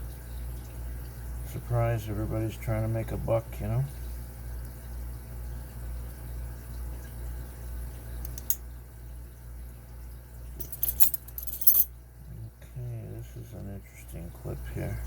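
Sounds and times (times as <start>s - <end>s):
lock-picking metallic clicks: 8.3s - 8.6s.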